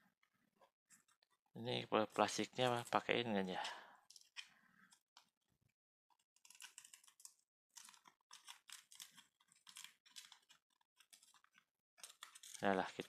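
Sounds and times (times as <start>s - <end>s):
plastic wrapper crinkling: 7.8s - 12.7s.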